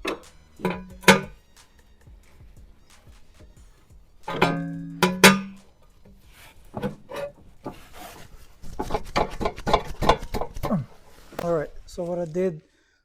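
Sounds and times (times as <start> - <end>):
sharp metal clanks: 0.0 - 1.4, 4.2 - 7.8.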